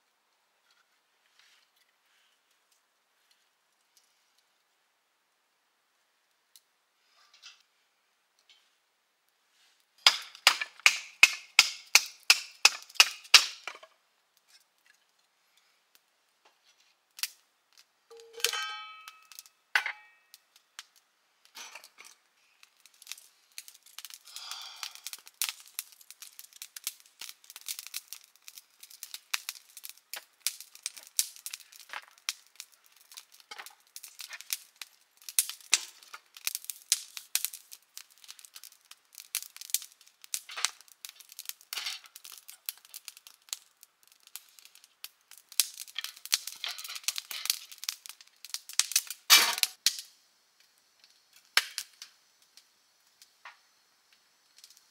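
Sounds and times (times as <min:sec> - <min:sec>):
faint crackling and ticking: 0:06.2 - 0:54.9
ringing clang: 0:18.2 - 0:19.2.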